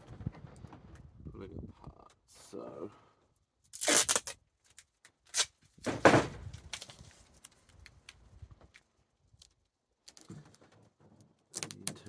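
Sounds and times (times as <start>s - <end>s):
duct tape ripping: 3.7s - 5.6s
tape crinkling and ticks: 3.7s - 5.6s, 6.6s - 12.0s.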